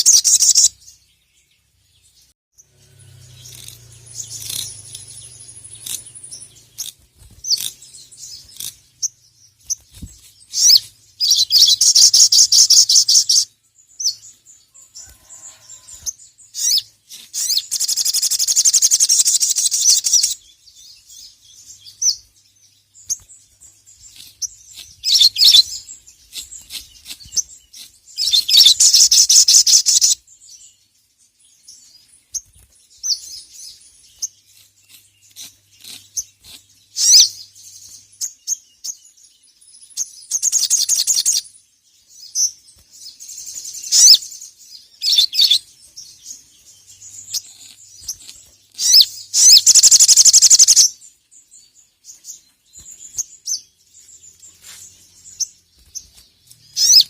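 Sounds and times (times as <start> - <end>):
bird chirps: 0.0 - 57.0
bird rattling trills: 47.2 - 50.9.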